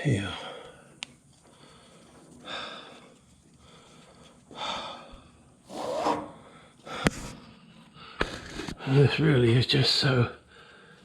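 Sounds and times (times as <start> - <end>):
man breathing hard: 3.6 - 5.1, 10.5 - 11.0.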